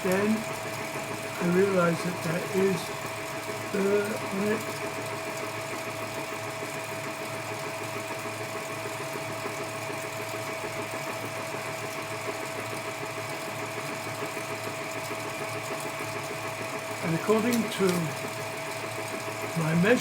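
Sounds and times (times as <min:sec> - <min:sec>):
metal lathe running: 0:00.0 - 0:20.0.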